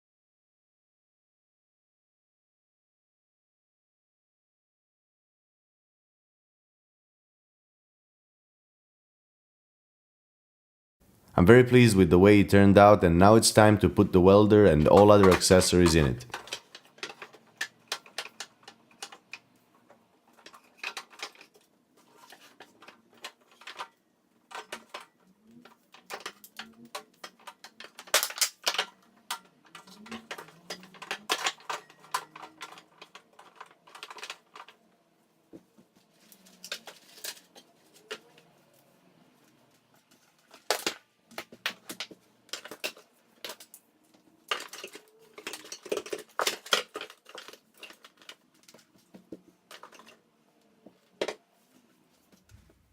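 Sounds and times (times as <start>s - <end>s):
hard objects clattering on wooden shelves: 13.2s - 52.9s.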